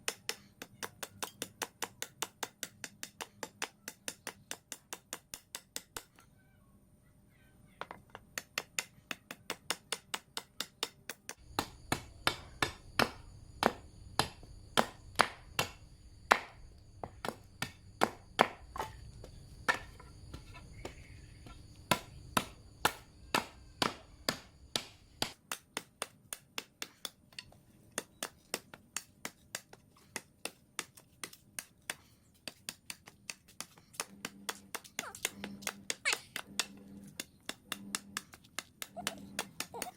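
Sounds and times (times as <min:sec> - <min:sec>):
hand tool knocking: 0:08.1 - 0:31.0.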